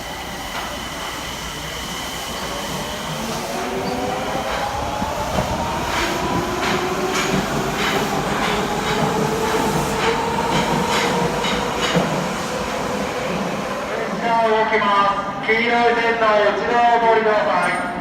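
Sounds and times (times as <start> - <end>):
train wheels clicking over rail joints: 3.3 - 12.4.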